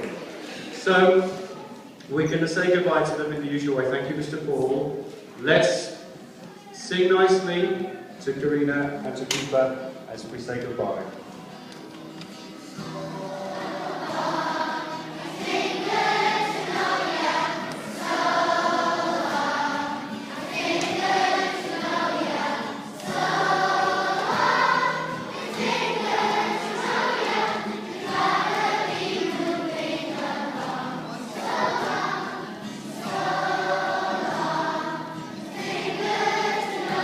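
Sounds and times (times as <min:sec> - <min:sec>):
children singing together: 0:12.6 - 0:37.0.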